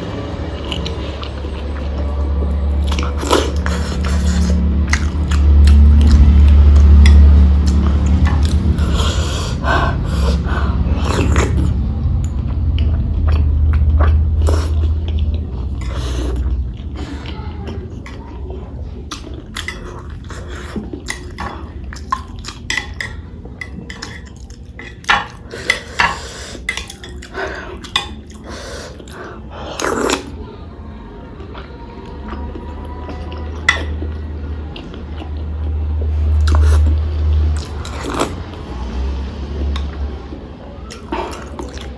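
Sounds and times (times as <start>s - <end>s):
loud low hum: 0.0s - 20.9s
chewing: 0.6s - 30.4s, 31.4s - 38.7s, 39.4s - 41.9s
clinks and scrapes on a plate: 19.2s - 28.4s.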